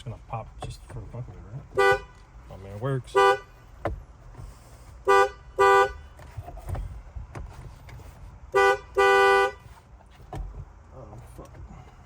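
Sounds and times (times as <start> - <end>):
car horn honking: 1.7 - 2.3, 3.0 - 3.7, 5.0 - 6.2, 8.5 - 9.8.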